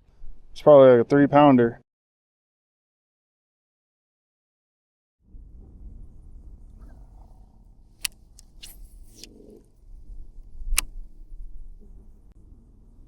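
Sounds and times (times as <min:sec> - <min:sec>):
wind rumbling on microphone: 0:05.3 - 0:13.0
sharp clicks: 0:10.7 - 0:11.0.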